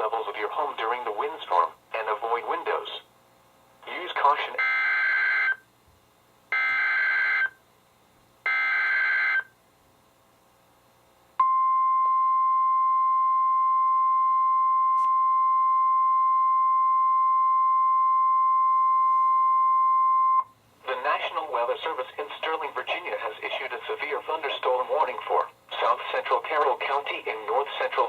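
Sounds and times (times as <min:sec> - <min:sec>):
steady alarm tone: 0:04.6 - 0:05.6, 0:06.5 - 0:07.6, 0:08.5 - 0:09.5, 0:11.4 - 0:20.4.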